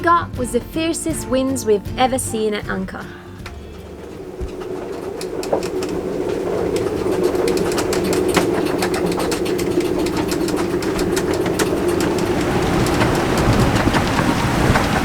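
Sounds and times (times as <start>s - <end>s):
wind moaning through rigging: 2.0s - 15.0s
rigging taps and rattles: 3.4s - 15.0s.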